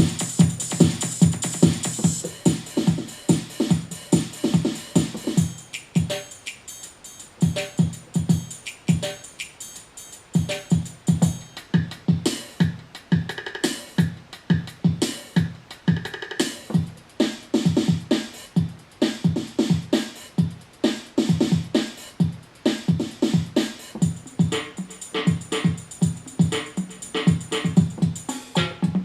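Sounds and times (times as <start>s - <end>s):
drum machine beat: 0.0s - 29.0s
synth backing: 24.0s - 29.0s.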